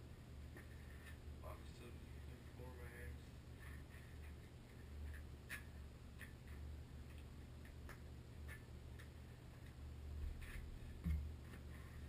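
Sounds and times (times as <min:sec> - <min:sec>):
low steady hum: 0:00.0 - 0:12.0
light clicks and taps: 0:04.2 - 0:09.8.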